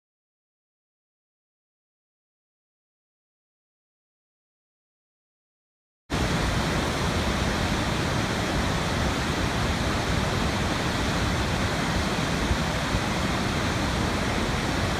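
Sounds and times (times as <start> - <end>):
rushing floodwater: 6.1 - 14.9.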